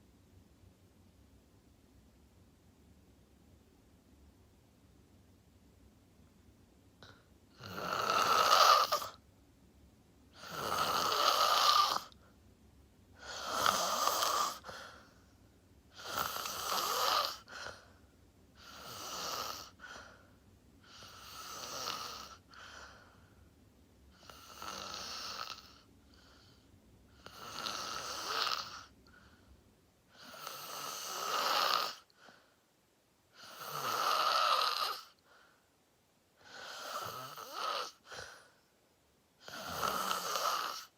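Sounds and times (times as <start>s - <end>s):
person snoring: 7.0s - 9.2s, 10.4s - 12.2s, 13.2s - 15.0s, 15.9s - 17.8s, 18.6s - 20.2s, 20.9s - 22.9s, 24.2s - 25.9s, 27.2s - 28.9s, 30.1s - 32.1s, 33.4s - 35.2s, 36.4s - 38.4s, 39.4s - 40.9s.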